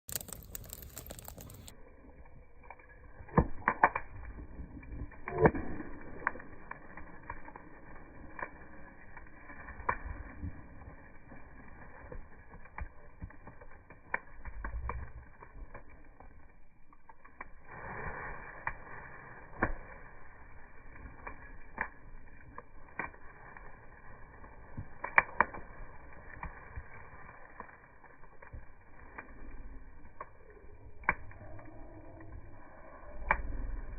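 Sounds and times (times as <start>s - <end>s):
slowed campfire crackling and popping: 0.0s - 33.9s.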